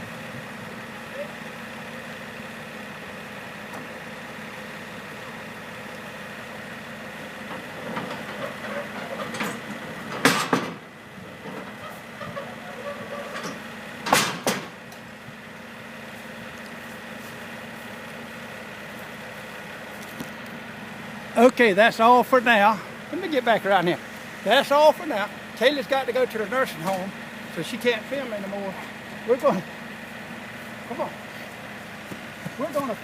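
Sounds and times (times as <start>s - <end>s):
excavator engine idling: 0.0s - 33.0s
loud clanks: 7.8s - 10.8s.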